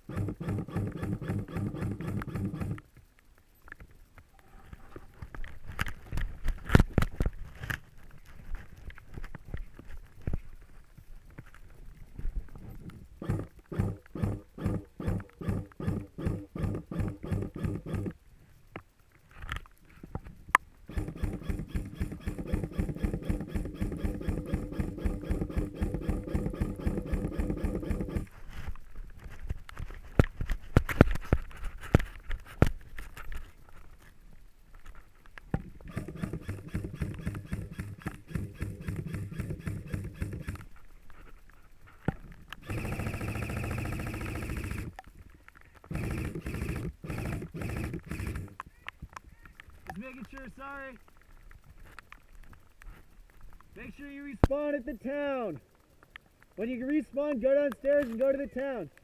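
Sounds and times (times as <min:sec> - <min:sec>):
gearbox motor whine: 0:00.0 - 0:02.8, 0:13.2 - 0:18.2, 0:20.9 - 0:28.3, 0:35.8 - 0:40.6, 0:42.6 - 0:45.0, 0:45.9 - 0:48.6
sharp clicks: 0:00.0 - 0:04.4, 0:12.8 - 0:28.3, 0:35.2 - 0:40.8, 0:42.2 - 0:52.9
airsoft gun firing rapidly: 0:00.1 - 0:02.8, 0:13.2 - 0:18.1, 0:20.9 - 0:28.3, 0:35.9 - 0:40.6, 0:42.6 - 0:44.9, 0:45.9 - 0:48.6.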